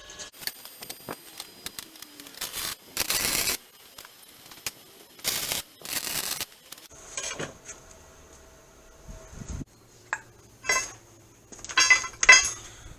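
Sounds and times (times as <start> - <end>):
harsh metalworking hissing: 0.2 - 6.9.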